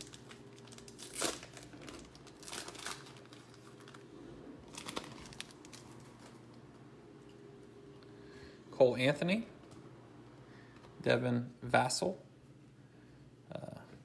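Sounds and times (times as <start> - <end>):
foil wrapper crinkling: 0.0 - 6.5.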